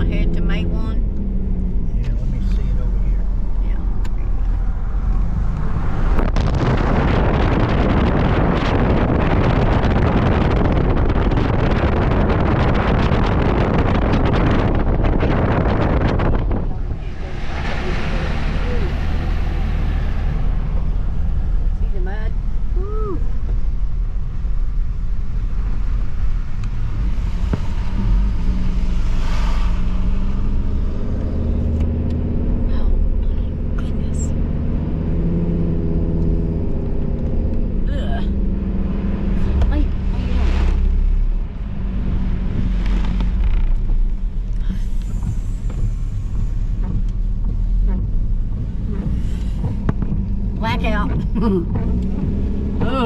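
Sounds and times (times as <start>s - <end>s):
car road noise: 0.0s - 53.0s
wind buffeting microphone: 3.3s - 53.0s
brief whoosh: 16.0s - 21.7s, 26.6s - 32.1s, 39.2s - 43.5s.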